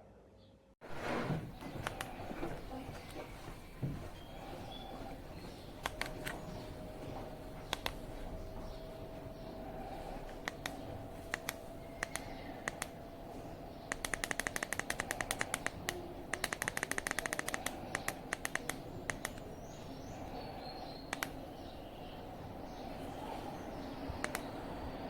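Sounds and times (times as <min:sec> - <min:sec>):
fan blowing air: 0:00.8 - 0:25.0
sharp clicks: 0:01.6 - 0:02.2, 0:05.8 - 0:06.6, 0:07.6 - 0:08.2, 0:10.3 - 0:13.0, 0:13.8 - 0:19.8, 0:20.9 - 0:21.7, 0:24.2 - 0:24.6.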